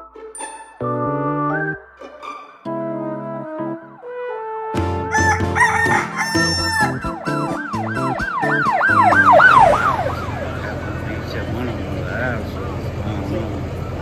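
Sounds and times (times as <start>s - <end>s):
rooster crow effect: 5.0s - 10.8s
siren sweeping up and down: 5.2s - 11.6s.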